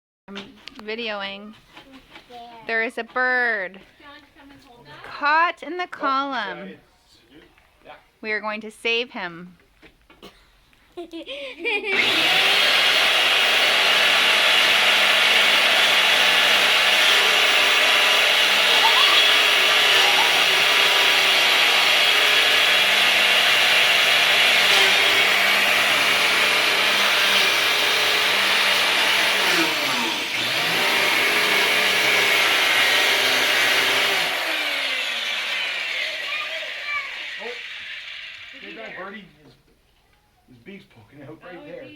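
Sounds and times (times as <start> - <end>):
power tool motor whining: 11.9 - 39.2.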